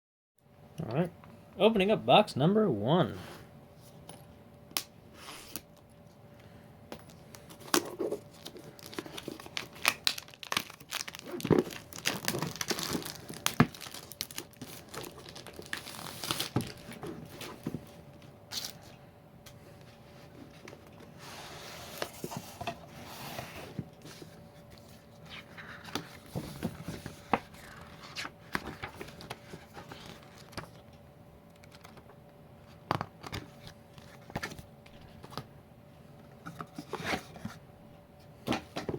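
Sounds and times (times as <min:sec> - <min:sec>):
faint steady hum: 0:00.4 - 0:38.9
plastic wrap tearing and crinkling: 0:08.3 - 0:17.0.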